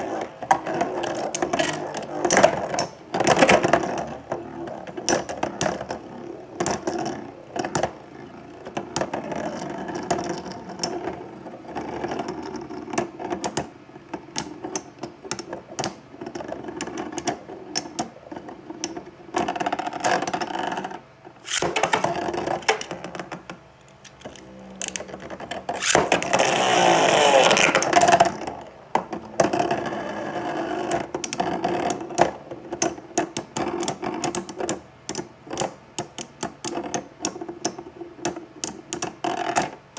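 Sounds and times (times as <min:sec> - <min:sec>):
spinning tops clacking together: 0:21.4 - 0:27.9
spinning tops whirring and grinding: 0:21.4 - 0:28.2.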